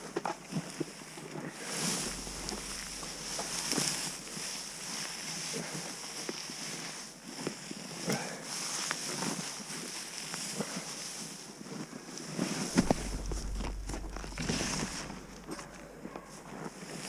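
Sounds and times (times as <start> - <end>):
low rumbling: 1.7 - 6.6, 12.8 - 16.6
wind buffeting microphone: 1.8 - 6.2, 12.8 - 16.5.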